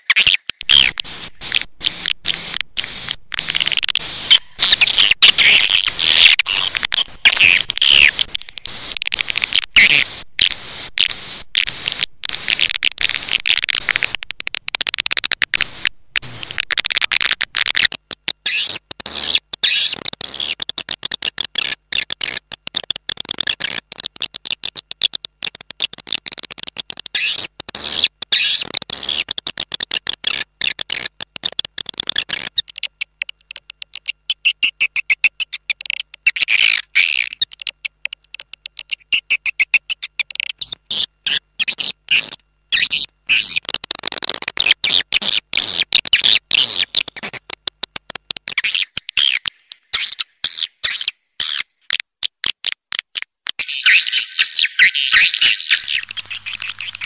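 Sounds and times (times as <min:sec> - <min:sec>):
swiftlet chirps chittering: 0:53.6 - 0:57.0.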